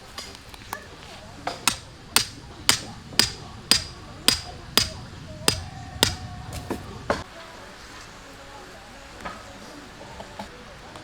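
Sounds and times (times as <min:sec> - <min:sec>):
hammer striking tent peg: 0:01.4 - 0:06.8.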